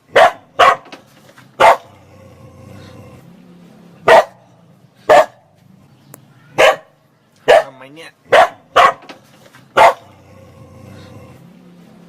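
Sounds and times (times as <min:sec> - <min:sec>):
dog barking: 0:00.1 - 0:01.0, 0:01.6 - 0:02.0, 0:04.0 - 0:04.4, 0:05.1 - 0:05.5, 0:06.5 - 0:09.1, 0:09.7 - 0:10.2.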